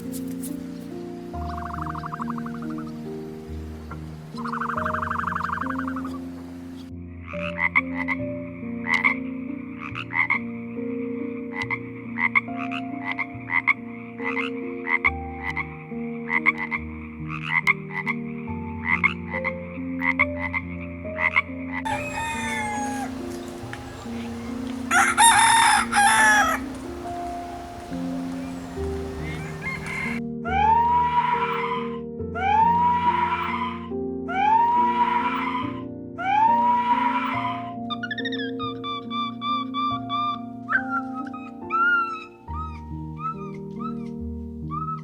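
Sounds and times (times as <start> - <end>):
frogs croaking: 0.0 - 30.2
background music: 0.0 - 45.0
rooster crowing: 21.9 - 30.2.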